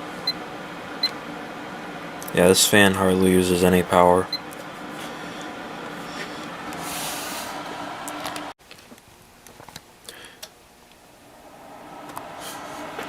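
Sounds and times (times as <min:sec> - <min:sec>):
dehumidifier fan whirring: 0:00.0 - 0:13.0.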